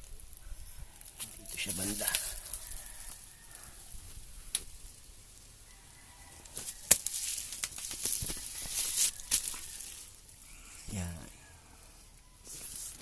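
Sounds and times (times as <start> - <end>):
rustling and scuffing under vehicle: 6.5 - 10.0.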